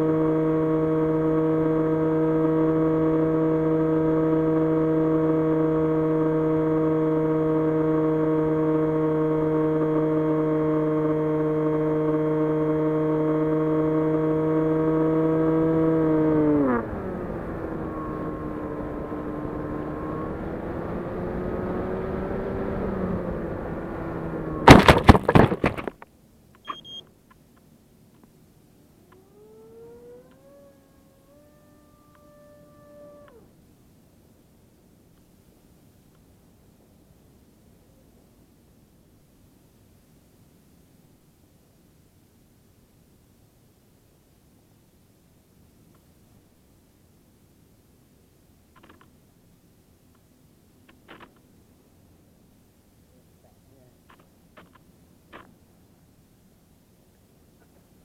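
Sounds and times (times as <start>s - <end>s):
electric motor and propeller whining: 0.0s - 24.6s, 29.0s - 33.6s
loud knocks: 24.7s - 26.0s.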